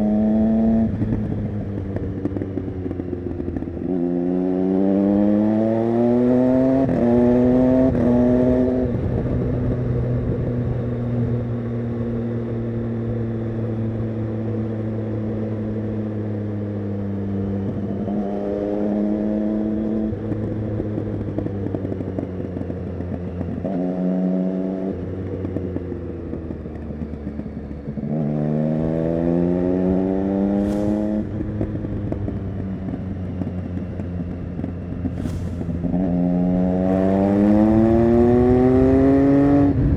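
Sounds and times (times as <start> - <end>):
motorcycle engine upshifting: 29.1 - 39.9.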